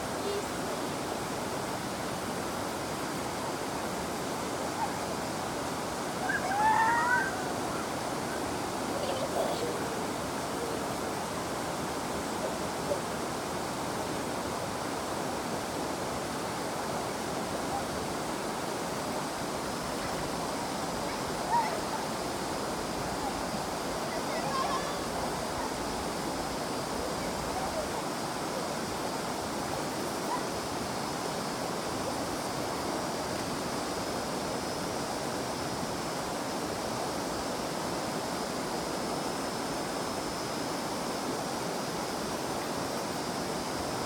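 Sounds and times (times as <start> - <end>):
high cicada drone: 0.0 - 44.0
river water rushing: 0.0 - 44.0.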